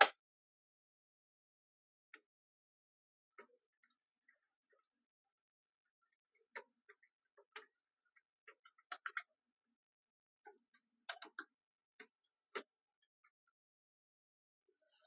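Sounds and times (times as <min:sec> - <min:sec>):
faint clicks of small parts: 0:03.3 - 0:13.6.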